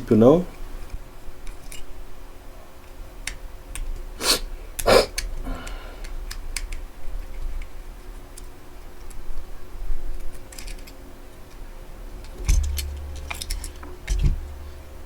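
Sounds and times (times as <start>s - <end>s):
plastic parts clicking: 6.0s - 7.7s, 10.1s - 11.6s, 12.2s - 14.5s.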